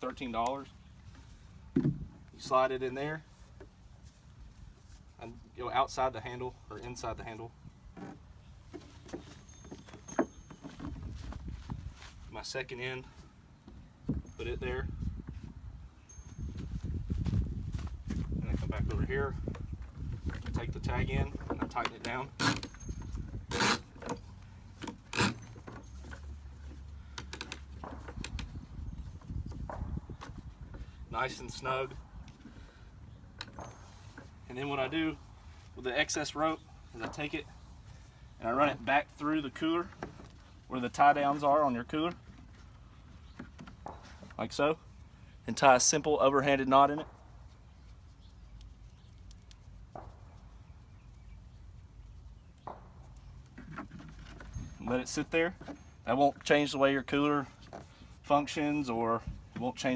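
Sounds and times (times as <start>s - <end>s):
rope rustling: 7.9s - 59.9s
rope handling ticks: 17.2s - 30.4s, 47.0s - 56.1s
rope zipping through ratchet: 22.3s - 24.2s, 25.0s - 25.7s.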